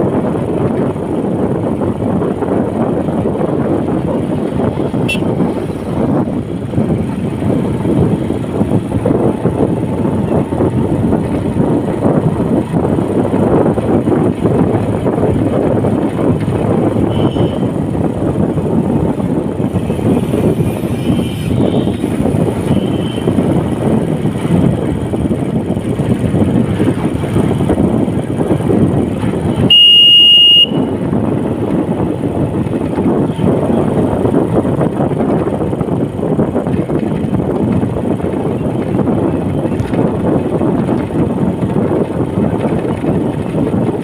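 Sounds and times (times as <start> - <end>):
wind rushing: 0.0 - 29.8
vehicle road noise: 0.0 - 44.0
high beep: 29.7 - 30.8.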